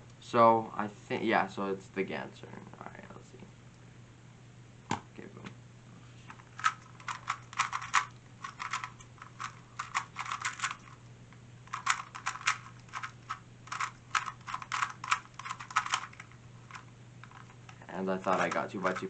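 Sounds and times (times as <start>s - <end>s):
faint low hum: 0.0s - 19.0s
puzzle cube clicking turns: 6.3s - 11.0s, 11.7s - 19.0s.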